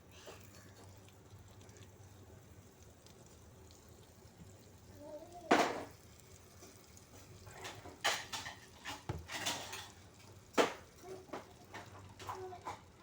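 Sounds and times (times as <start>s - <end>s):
utensils clinking against a pan: 7.6s - 10.0s.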